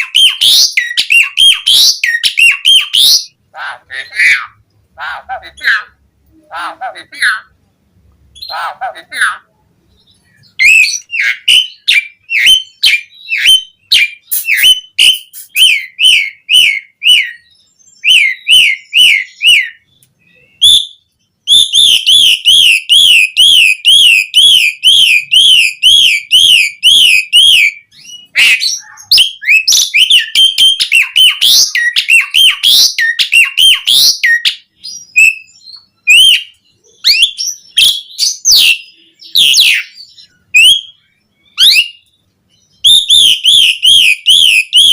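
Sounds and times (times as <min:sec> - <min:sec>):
starling singing: 0:00.0 - 0:07.7, 0:08.3 - 0:44.9
bird chattering notes: 0:10.5 - 0:16.8.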